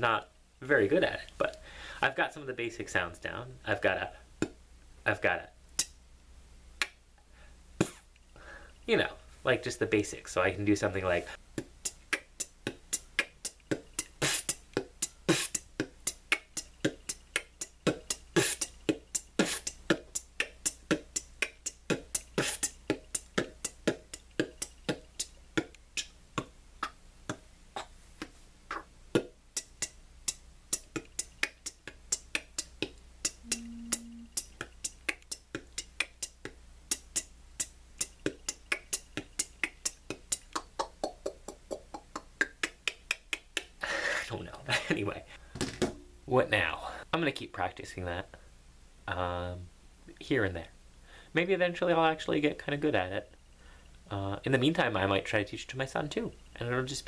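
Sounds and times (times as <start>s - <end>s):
man beatboxing clicks and pops: 4.4s - 4.6s, 5.8s - 6.0s, 6.8s - 7.0s, 7.8s - 8.1s, 11.5s - 43.8s
low hummed note: 33.5s - 34.3s.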